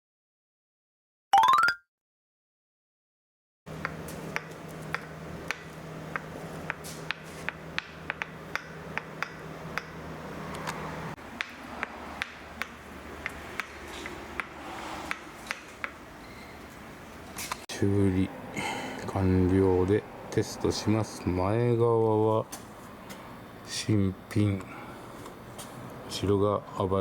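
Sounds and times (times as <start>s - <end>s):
steady low hum: 3.7s - 27.0s.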